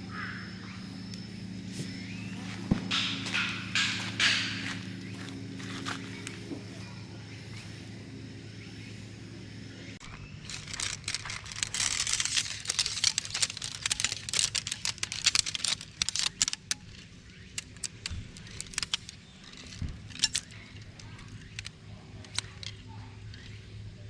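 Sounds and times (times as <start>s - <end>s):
steady low hum: 0.0s - 24.0s
sharp clicks: 10.0s - 23.6s
light clinking and rustling: 10.5s - 23.6s.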